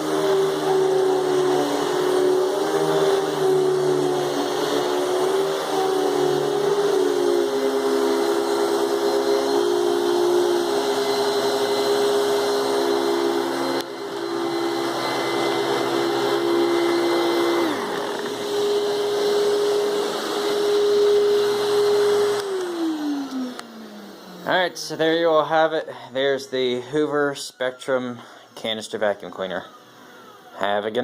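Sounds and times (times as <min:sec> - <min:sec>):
vacuum cleaner whining: 0:00.0 - 0:31.0.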